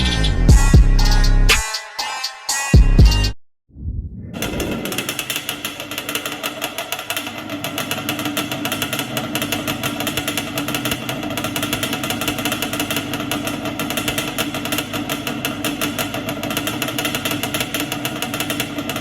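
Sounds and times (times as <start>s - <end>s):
car engine running: 4.4s - 19.0s.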